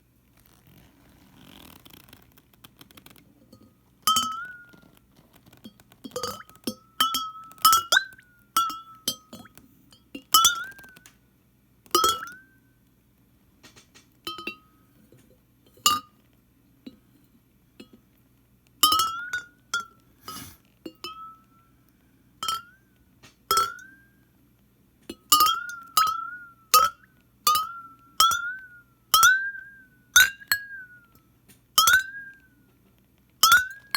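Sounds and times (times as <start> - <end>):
ceramic flask clinking: 3.6 - 4.7, 6.0 - 10.8.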